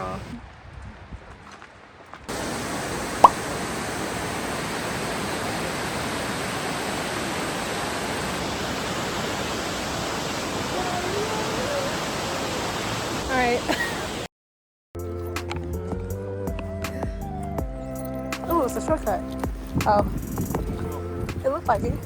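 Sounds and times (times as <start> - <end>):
waterfall roaring: 2.3 - 14.3.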